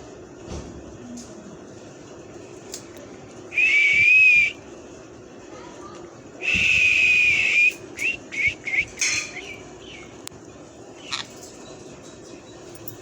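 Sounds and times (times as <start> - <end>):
parrot whistling and chirping: 6.4 - 10.1, 11.0 - 11.4.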